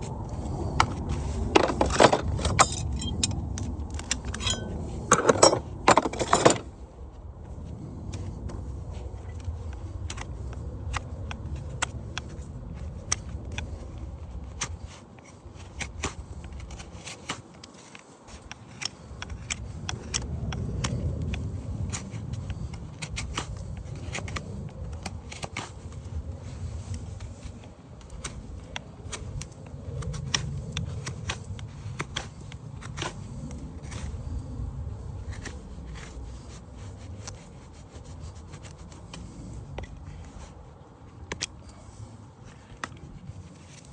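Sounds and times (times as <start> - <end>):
steel tools scraping hoof: 1.5 - 3.4, 4.0 - 6.7.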